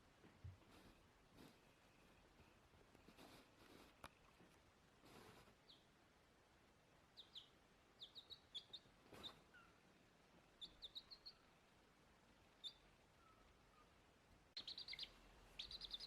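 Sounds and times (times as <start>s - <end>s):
small bird chirping: 5.5s - 5.9s, 7.1s - 9.8s, 10.4s - 11.7s, 12.4s - 16.0s.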